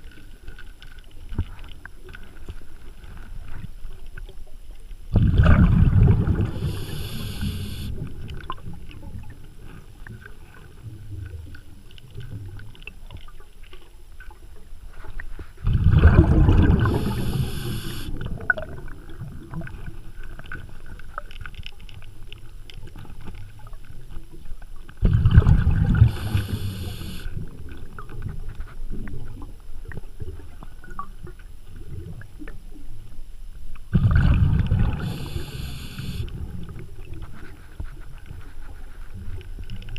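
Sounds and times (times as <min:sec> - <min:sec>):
underwater bubbling and hissing: 0:05.1 - 0:13.3, 0:14.2 - 0:22.0, 0:25.0 - 0:32.5, 0:34.0 - 0:39.9
diver breathing through regulator: 0:06.3 - 0:08.0, 0:16.4 - 0:18.2, 0:25.8 - 0:27.4, 0:34.5 - 0:36.3.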